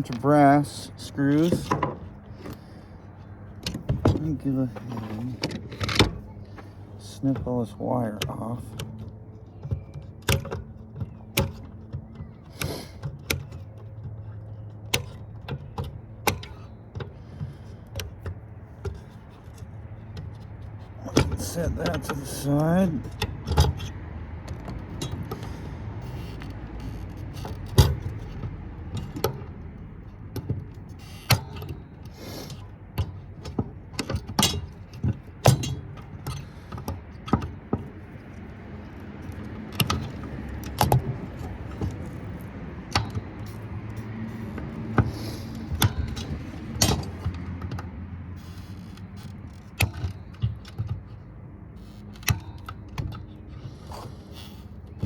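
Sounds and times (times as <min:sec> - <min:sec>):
wire cutters snipping wire: 0:00.0 - 0:02.7.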